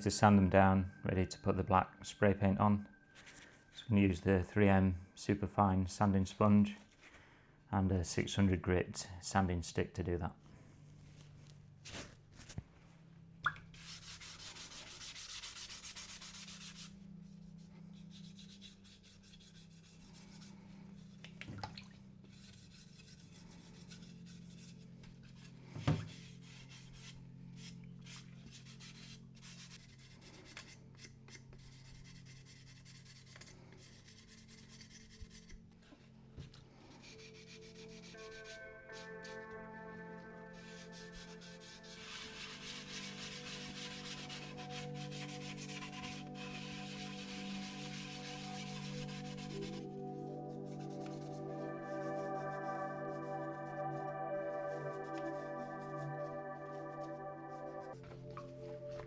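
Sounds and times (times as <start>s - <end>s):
sanding rasping rub: 13.8s - 21.2s, 22.3s - 24.9s, 36.9s - 39.2s, 40.5s - 57.6s.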